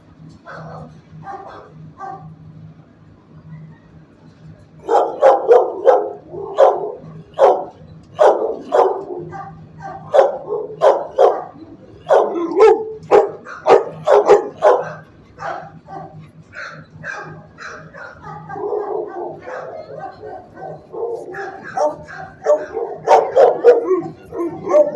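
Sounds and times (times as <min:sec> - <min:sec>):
faint low hum: 0:00.0 - 0:24.9
dogs barking: 0:00.4 - 0:02.4, 0:04.7 - 0:24.9.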